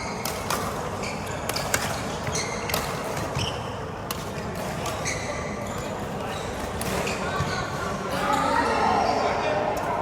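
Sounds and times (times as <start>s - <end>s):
rackets striking shuttlecock: 0.0s - 5.0s
sneaker squeaks on court: 0.0s - 7.8s.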